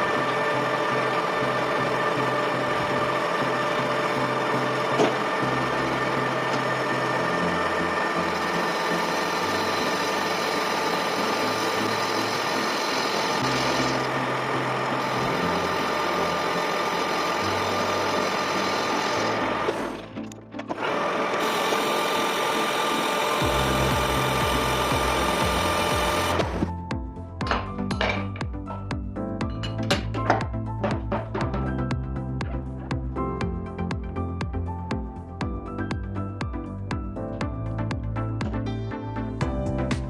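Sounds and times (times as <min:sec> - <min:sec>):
lathe whining: 0:00.0 - 0:26.7
background music with bass line: 0:23.4 - 0:40.0.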